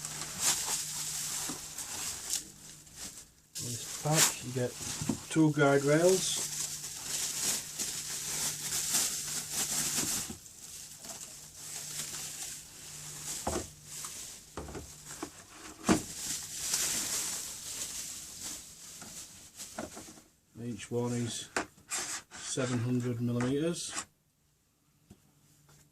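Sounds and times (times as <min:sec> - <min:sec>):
packaging rustling and crinkling: 0:00.0 - 0:20.3.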